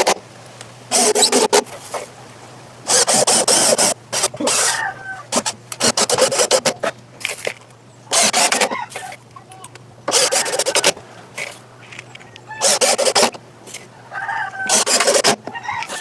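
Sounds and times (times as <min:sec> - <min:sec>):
rasping strokes on wood: 0:00.9 - 0:01.7, 0:02.9 - 0:04.7, 0:05.3 - 0:06.8, 0:08.1 - 0:09.1, 0:10.1 - 0:11.6, 0:12.6 - 0:13.9, 0:14.6 - 0:16.0.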